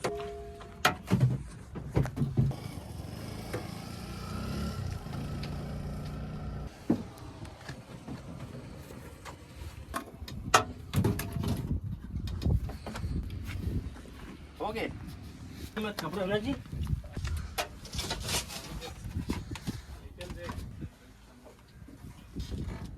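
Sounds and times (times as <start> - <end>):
diesel engine running: 2.5 - 9.8.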